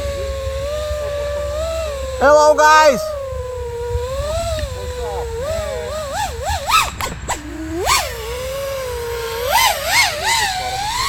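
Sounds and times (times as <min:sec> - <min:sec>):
drone motors whining: 0:00.0 - 0:11.0
sharp clicks: 0:04.3 - 0:08.4.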